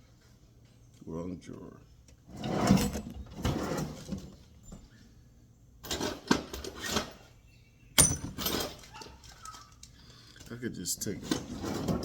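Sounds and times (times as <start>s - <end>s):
metal tools clattering in drawer: 5.8s - 7.3s, 8.0s - 9.8s, 11.1s - 12.0s.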